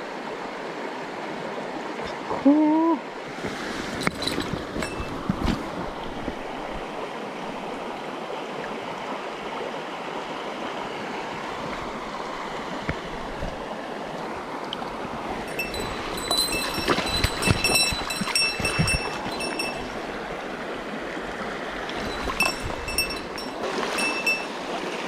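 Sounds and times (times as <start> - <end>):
stream rushing over rocks: 3.0 - 25.0.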